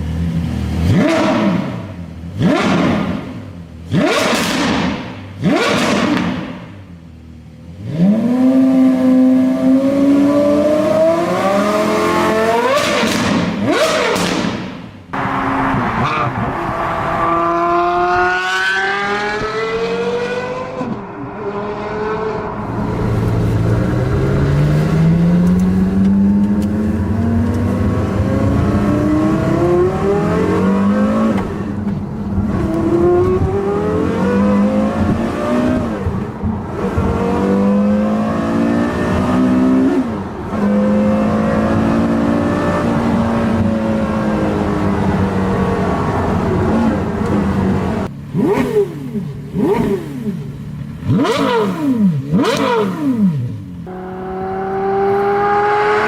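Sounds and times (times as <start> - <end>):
car engine accelerating hard: 0.0 - 6.8, 7.7 - 56.0.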